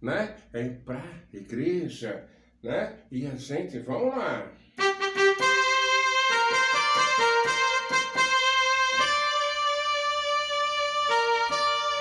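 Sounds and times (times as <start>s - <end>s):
electronic keyboard music: 4.8s - 12.0s.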